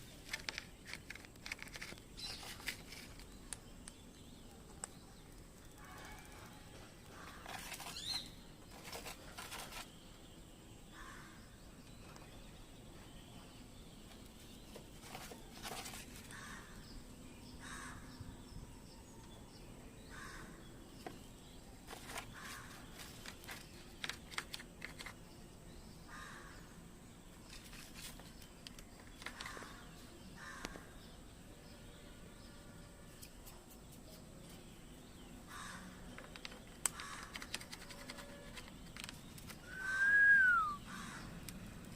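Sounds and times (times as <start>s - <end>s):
sharp clicks: 36.2s - 39.6s.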